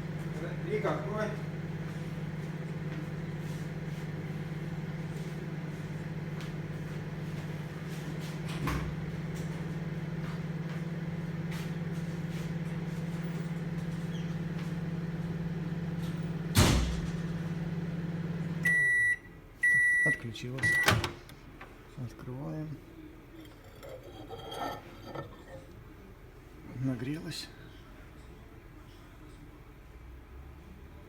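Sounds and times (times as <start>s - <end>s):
microwave oven humming: 0.0s - 26.9s
loud short thump: 16.6s - 17.2s
microwave beep: 17.4s - 21.2s.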